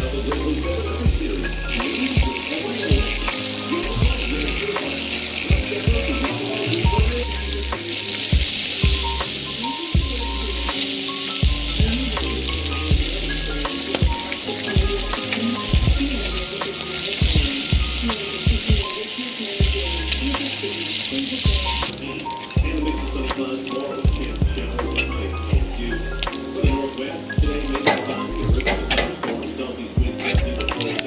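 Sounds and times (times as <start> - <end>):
background music with bass line: 0.0 - 19.0, 19.6 - 31.0
food sizzling in a pan: 1.2 - 22.6.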